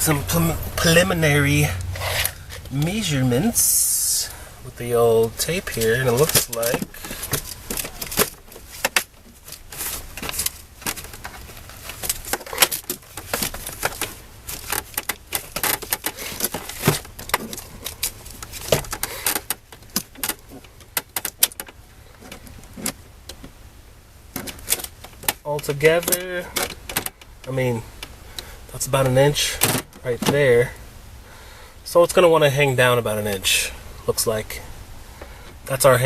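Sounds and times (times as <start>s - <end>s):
light clicks and metallic rattles: 5.1s - 23.6s, 24.3s - 30.8s.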